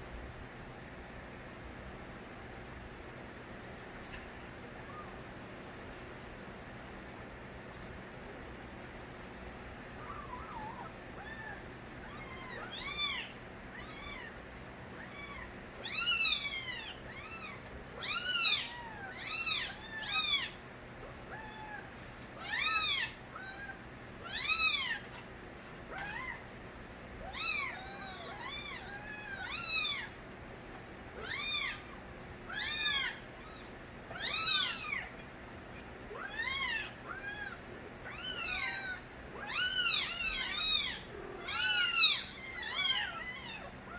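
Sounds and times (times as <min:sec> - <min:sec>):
kittens meowing: 0:10.0 - 0:20.6, 0:21.3 - 0:25.3, 0:25.9 - 0:26.5, 0:27.2 - 0:30.2, 0:31.2 - 0:43.9.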